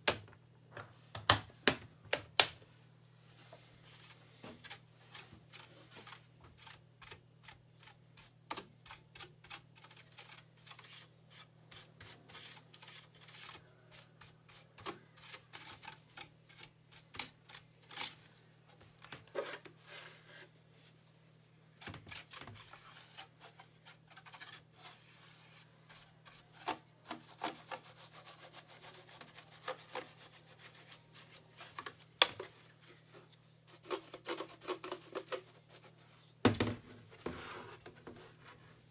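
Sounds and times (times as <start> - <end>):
hands rubbing plastic keyboard: 26.6 - 32.0, 33.7 - 36.0.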